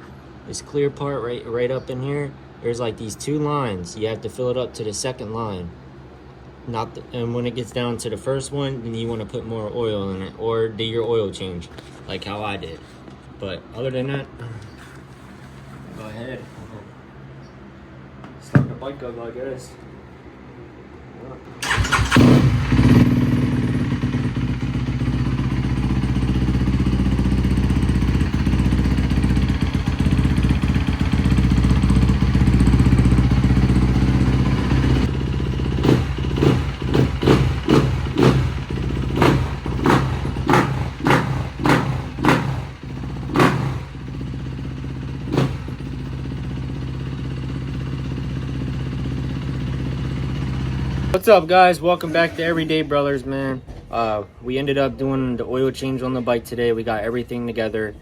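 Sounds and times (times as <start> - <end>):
dirt bike engine idling: 21.6 - 51.2
engine throttle blips: 21.6 - 51.2.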